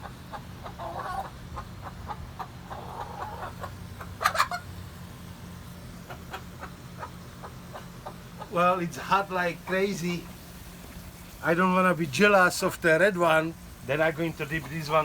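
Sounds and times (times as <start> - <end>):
chickens clucking: 0.0 - 11.4, 14.0 - 15.0
steady low hum: 0.0 - 15.0
chicken squawk: 0.1 - 4.7, 6.0 - 8.6.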